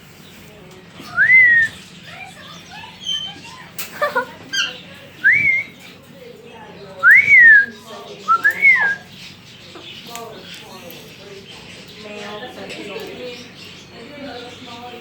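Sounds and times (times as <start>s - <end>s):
parrots whistling: 1.1s - 1.8s, 8.3s - 9.1s.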